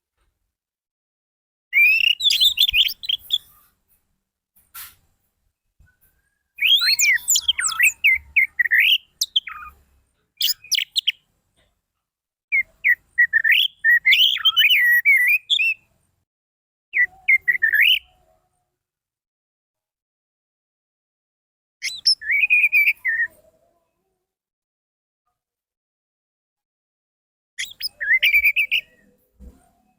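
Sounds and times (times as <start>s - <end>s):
thrush singing whistles and chirps: 1.8s - 3.6s, 6.4s - 9.8s, 10.4s - 11.2s, 12.5s - 15.8s, 17.0s - 18.1s, 21.8s - 23.3s, 27.6s - 29.0s.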